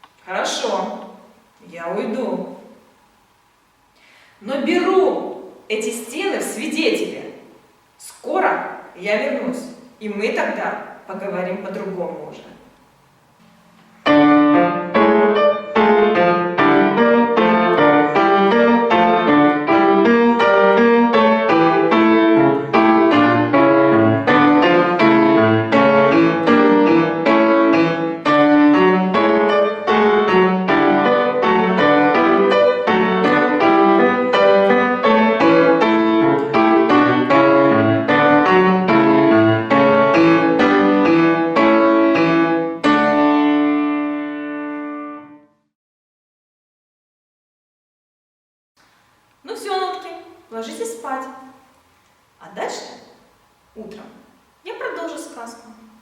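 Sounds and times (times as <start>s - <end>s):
solo piano playing: 14.0s - 45.4s.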